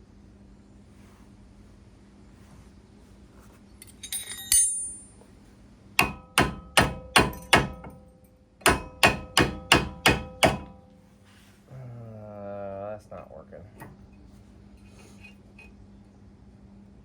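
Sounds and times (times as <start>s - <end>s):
light metallic clink: 3.8s - 5.3s
hammer striking metal: 6.0s - 10.8s.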